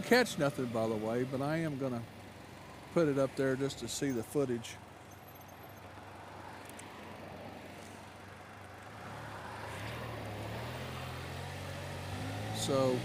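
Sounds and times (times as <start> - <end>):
road noise: 0.0 - 13.0
vehicle engine accelerating: 7.8 - 13.0.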